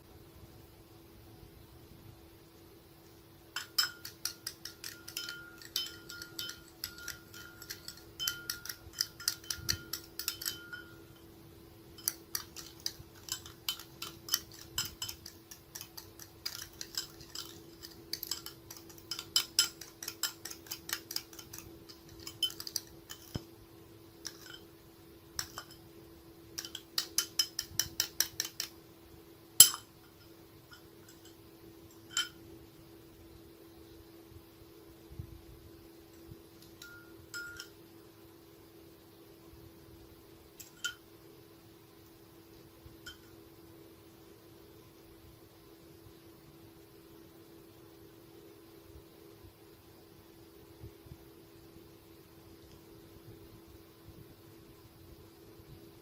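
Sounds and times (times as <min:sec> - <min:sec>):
steady low hum: 0:00.0 - 0:56.0
spoon clinking against dish: 0:03.6 - 0:11.3, 0:12.0 - 0:23.4, 0:24.2 - 0:24.7, 0:25.4 - 0:25.8, 0:26.6 - 0:28.7, 0:29.6 - 0:32.4, 0:36.6 - 0:37.8, 0:40.6 - 0:41.0, 0:43.1 - 0:43.4.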